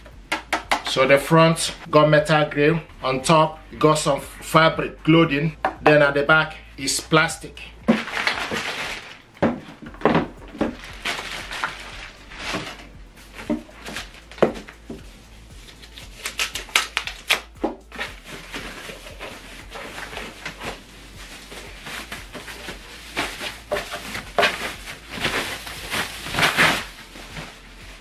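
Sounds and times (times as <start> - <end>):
knocks and rustles of handling: 7.8 - 28.0.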